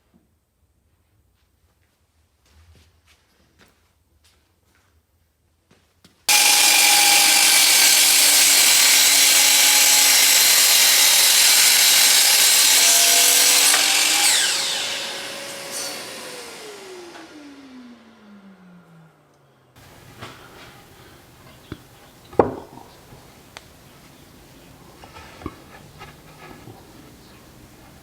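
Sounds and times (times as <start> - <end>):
power saw cutting wood: 6.3 - 18.8, 19.8 - 28.0
saw motor winding down: 6.3 - 19.2.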